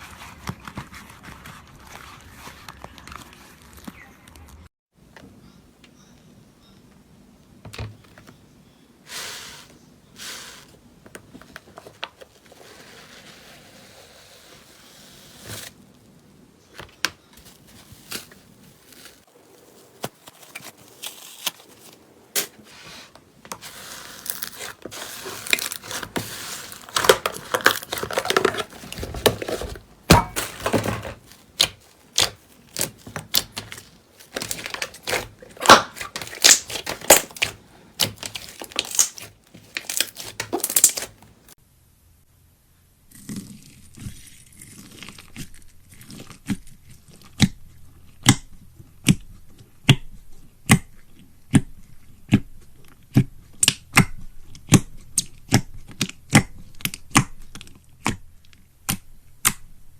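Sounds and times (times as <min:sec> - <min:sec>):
slime squished by hand: 0:24.2 - 0:41.3.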